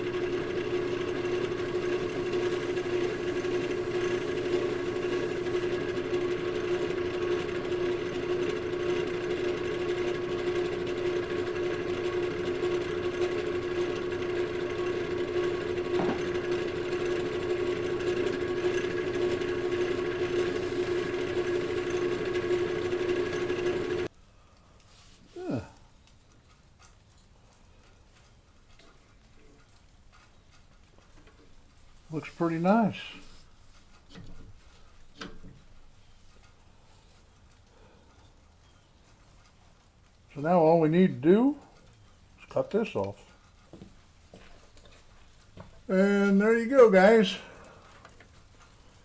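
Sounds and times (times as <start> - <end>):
wood lathe humming: 0.0 - 24.1.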